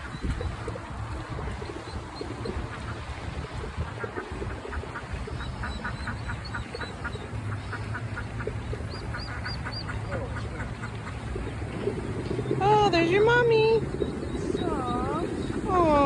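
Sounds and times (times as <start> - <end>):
high duckling peeps: 3.9 - 11.4
low hum: 11.0 - 16.0.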